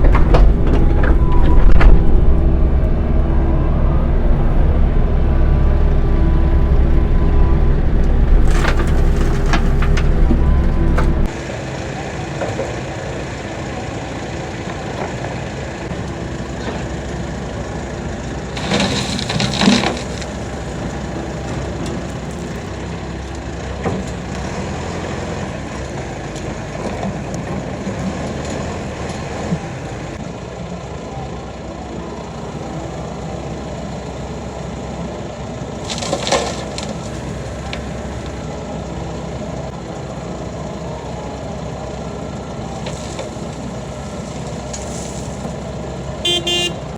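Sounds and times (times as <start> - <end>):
excavator running: 0.0 - 46.9
bucket scraping concrete and gravel: 8.3 - 11.4.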